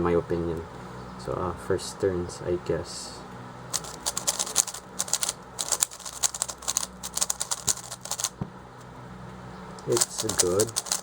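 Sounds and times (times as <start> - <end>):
puzzle cube plastic clicks: 3.7 - 8.4, 9.8 - 11.0.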